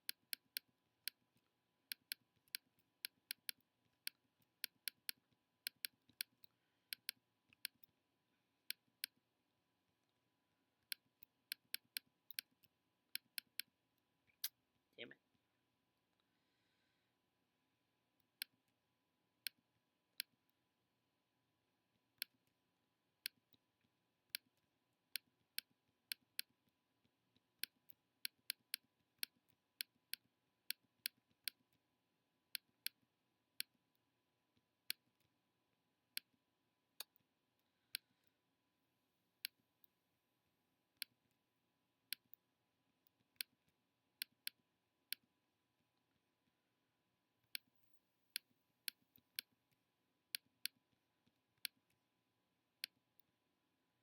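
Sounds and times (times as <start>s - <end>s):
computer mouse clicking: 0.0s - 8.0s, 10.8s - 13.8s, 27.4s - 31.8s.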